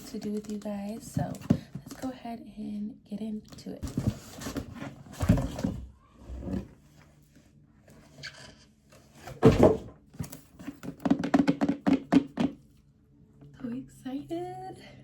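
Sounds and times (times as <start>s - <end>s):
objects knocking and thumping: 3.8s - 5.9s, 9.2s - 12.6s.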